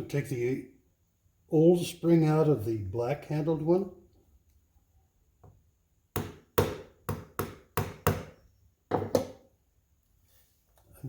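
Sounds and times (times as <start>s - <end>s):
sharp hard knocks: 6.1s - 9.4s.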